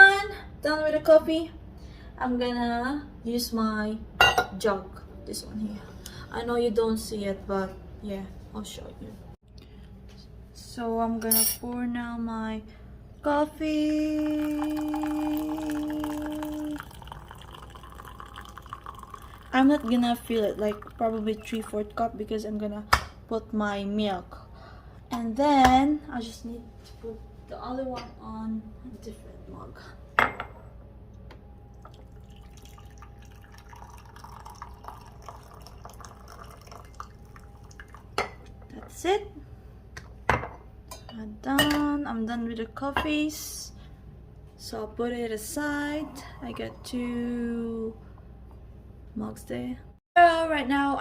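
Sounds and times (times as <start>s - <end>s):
coffee pouring into a mug: 14.1s - 22.0s, 31.7s - 38.2s.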